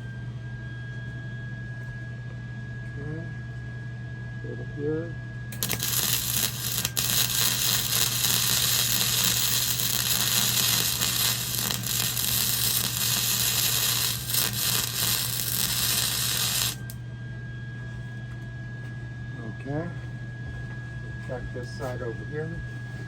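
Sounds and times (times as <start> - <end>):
welding arc crackling: 5.6 - 17.0
low hum: 5.6 - 17.1.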